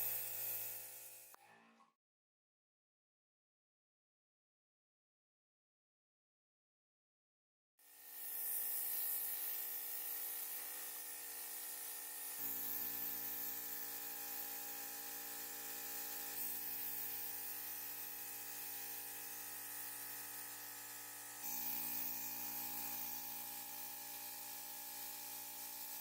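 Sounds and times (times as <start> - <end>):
power tool motor hissing: 0.0 - 1.4.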